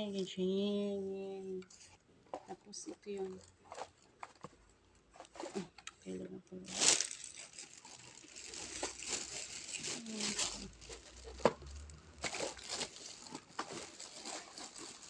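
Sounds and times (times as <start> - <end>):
packaging crinkling: 6.7 - 15.0.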